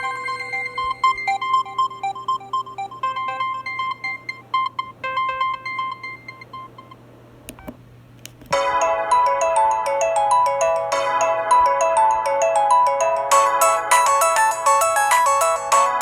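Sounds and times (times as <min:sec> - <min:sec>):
chiming mallet-like ringtone: 0:00.0 - 0:04.4
beeping ringtone melody: 0:00.0 - 0:07.0, 0:08.6 - 0:16.0.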